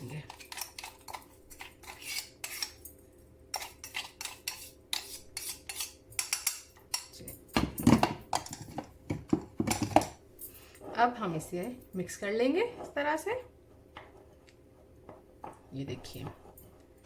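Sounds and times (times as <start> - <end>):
spoon scraping inside grinder jar: 0.3 - 2.8, 3.5 - 6.0.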